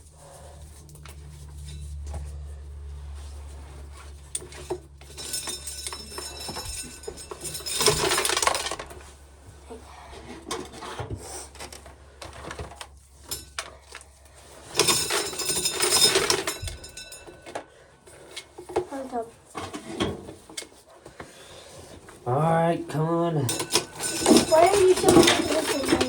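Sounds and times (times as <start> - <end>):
corn kernels rattling against metal: 4.5 - 9.1, 14.6 - 17.3, 23.5 - 26.0.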